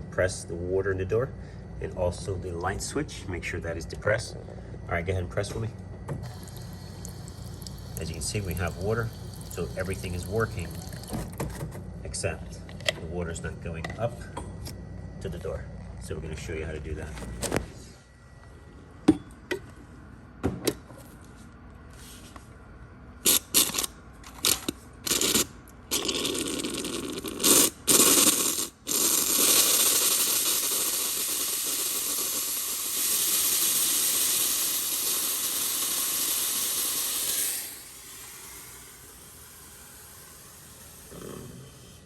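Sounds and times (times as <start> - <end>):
handheld steamer hissing: 27.3 - 42.0.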